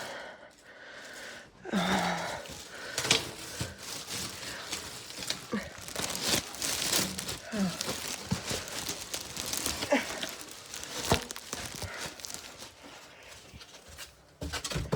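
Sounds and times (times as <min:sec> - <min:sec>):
person breathing hard: 0:00.0 - 0:13.6
rustling: 0:02.1 - 0:14.7
person grunting: 0:07.4 - 0:08.2.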